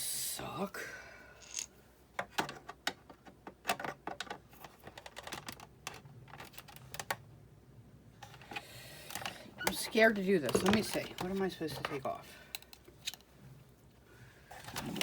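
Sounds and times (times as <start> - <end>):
tool being handled: 1.4 - 1.7
hard plastic parts clicking: 2.2 - 7.2, 8.2 - 13.3.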